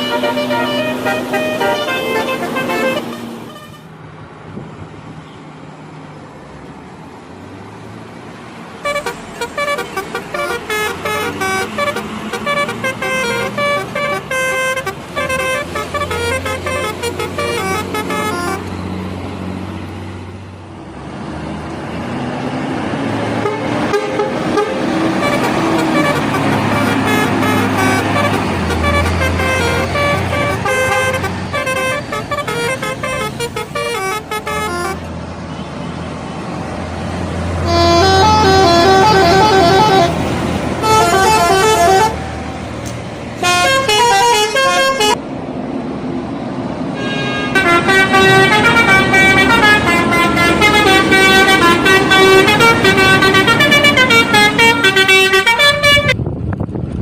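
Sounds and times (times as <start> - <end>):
air horns playing melodic tunes: 0.0 - 3.9, 8.8 - 18.7, 23.4 - 35.1, 37.6 - 42.4, 43.4 - 45.2, 47.0 - 56.2
low bus engine hum: 0.0 - 57.0.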